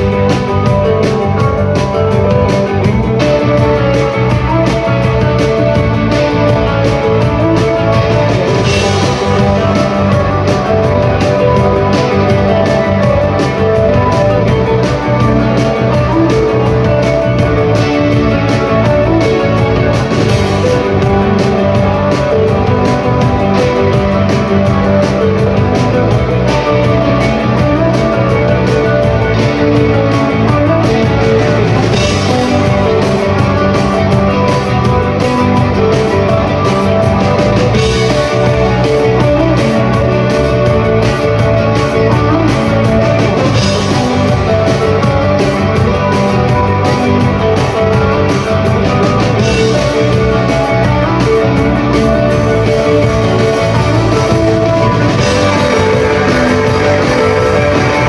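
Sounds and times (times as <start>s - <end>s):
drum hits: 0.0s - 58.0s
rock band playing: 0.0s - 58.0s.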